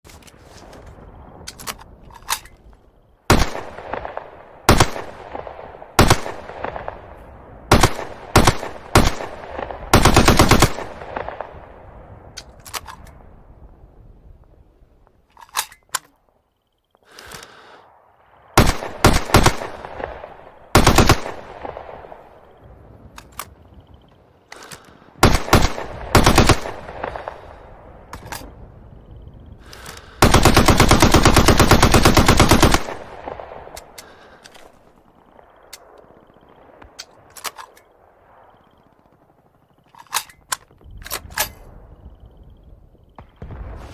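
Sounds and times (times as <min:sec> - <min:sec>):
submachine gun automatic bursts: 0:09.9 - 0:11.0, 0:20.8 - 0:21.5, 0:25.2 - 0:26.9, 0:30.2 - 0:33.1.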